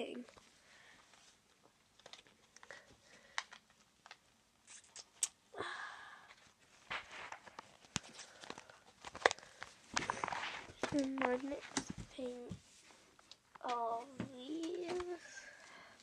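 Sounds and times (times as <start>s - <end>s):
packaging rustling: 6.8s - 12.2s.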